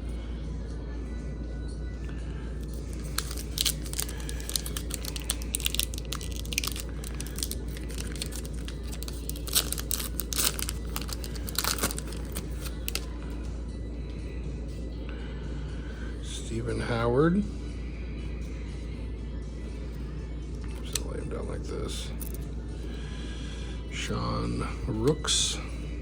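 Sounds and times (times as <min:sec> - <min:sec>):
wrapper tearing and crinkling: 0:02.8 - 0:13.1.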